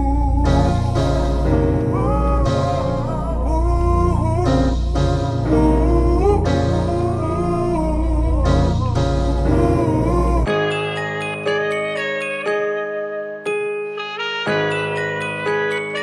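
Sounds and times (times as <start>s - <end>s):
deep sustained bass notes: 0.0s - 10.5s
bell-like tones loop: 0.4s - 14.0s.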